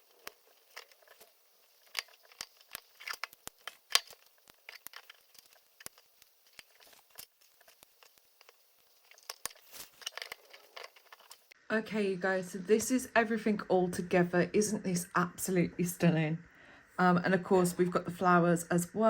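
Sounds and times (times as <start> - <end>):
plastic bricks clicking together: 1.8 - 11.5.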